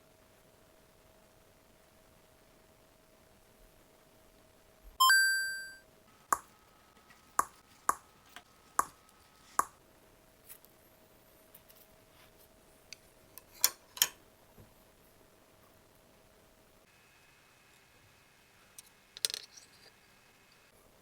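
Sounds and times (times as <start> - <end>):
faint steady hum: 0.0 - 21.0
tableware ringing ping: 5.0 - 5.8.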